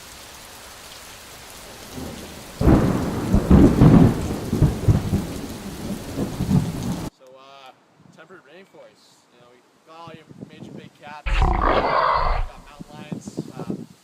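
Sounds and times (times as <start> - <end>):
steady rain: 0.0 - 7.1, 11.3 - 14.0
thunderclap rumbling: 1.9 - 7.1, 11.3 - 12.9.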